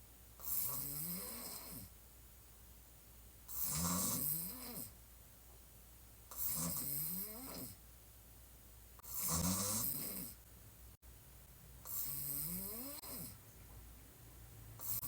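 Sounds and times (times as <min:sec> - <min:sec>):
woman snoring: 0:00.4 - 0:01.9, 0:03.5 - 0:05.0, 0:06.3 - 0:07.8, 0:09.0 - 0:10.4, 0:11.9 - 0:13.4.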